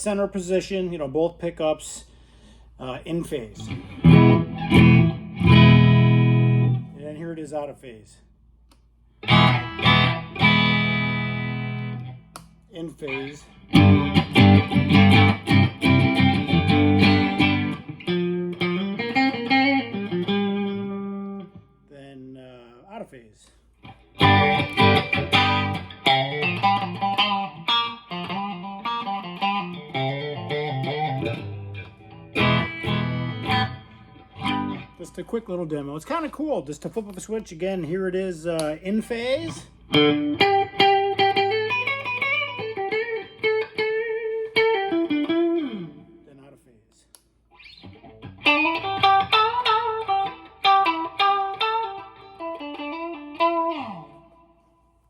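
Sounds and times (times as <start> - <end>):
clean electric guitar chords: 3.6 - 7.1, 9.2 - 12.3, 13.1 - 21.7, 23.9 - 35.0, 39.4 - 46.2, 47.6 - 54.5
electric guitar single notes: 3.6 - 7.2, 9.2 - 21.7, 23.8 - 35.1, 39.4 - 46.2, 47.6 - 54.6.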